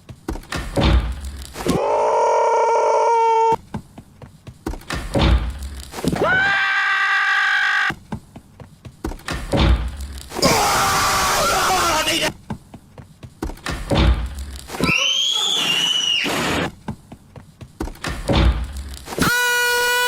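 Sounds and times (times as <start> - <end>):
short thuds and knocks: 0.0 - 1.4, 3.6 - 6.2, 8.0 - 10.2, 12.4 - 14.6, 16.8 - 18.9.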